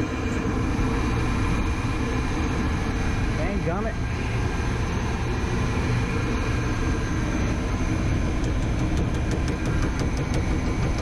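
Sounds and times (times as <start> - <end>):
hvac unit humming: 0.0 - 11.0.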